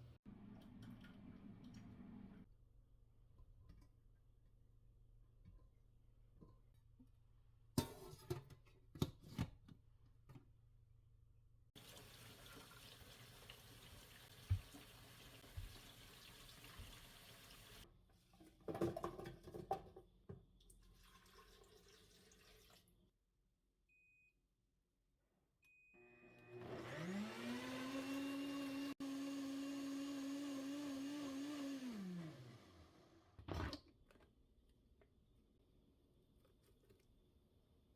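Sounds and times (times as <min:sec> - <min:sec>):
running water: 0:11.8 - 0:17.8
electric blender motor running: 0:26.0 - 0:33.4.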